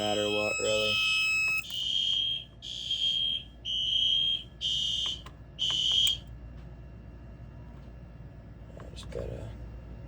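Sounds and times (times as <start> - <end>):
fire alarm horn buzzing: 0.0 - 6.3.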